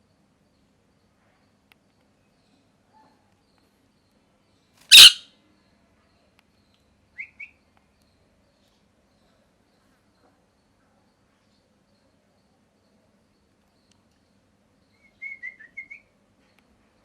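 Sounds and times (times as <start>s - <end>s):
parrot chirping: 4.9s - 5.2s
parrot screeching: 4.9s - 5.2s.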